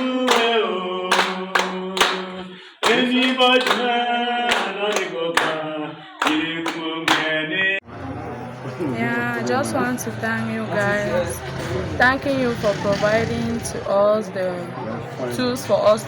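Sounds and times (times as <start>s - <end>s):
people clapping along: 0.0s - 7.6s
group of people singing: 0.0s - 7.9s.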